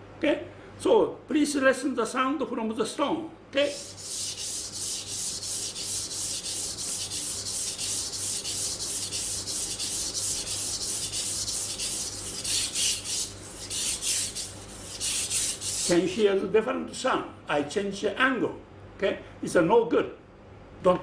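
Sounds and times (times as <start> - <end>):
knife scraping on whetstone: 3.8 - 16.0.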